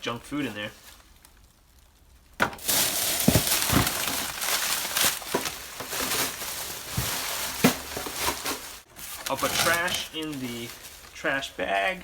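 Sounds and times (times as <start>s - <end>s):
plastic bag crinkling: 0.1s - 12.0s.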